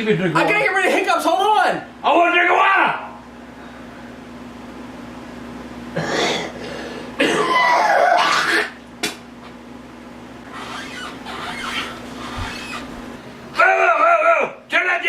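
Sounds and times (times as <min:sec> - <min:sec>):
man coughing: 0:05.9 - 0:08.8.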